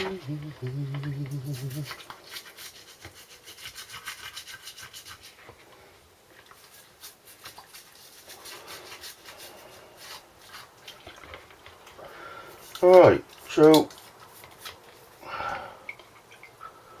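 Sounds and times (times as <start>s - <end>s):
brush scrubbing metal part: 0.0s - 5.5s, 6.6s - 10.8s.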